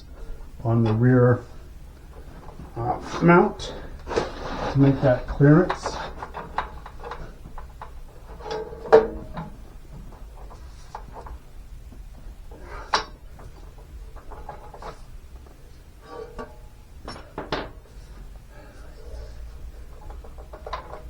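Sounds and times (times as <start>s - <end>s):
metal exhaust pipe clunks and scrapes: 0.0s - 11.4s, 15.9s - 21.0s.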